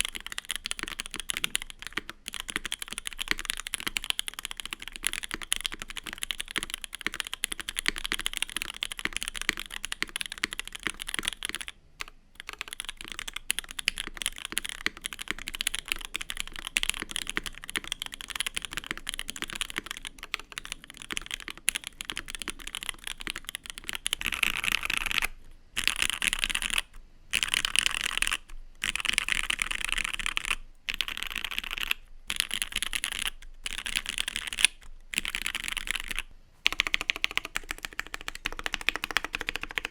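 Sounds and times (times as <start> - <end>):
mechanical keyboard typing: 0.0 - 39.9
keyboard mashing: 27.4 - 39.9.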